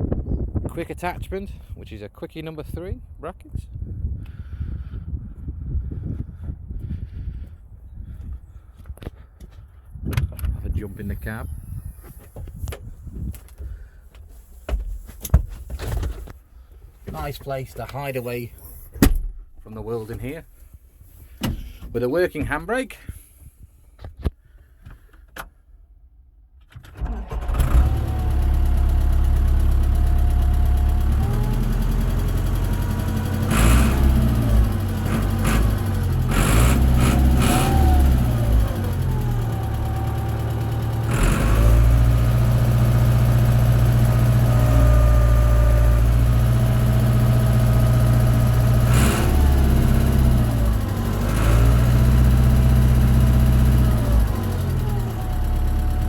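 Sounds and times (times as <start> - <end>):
tractor diesel engine revving: 27.0 - 56.0.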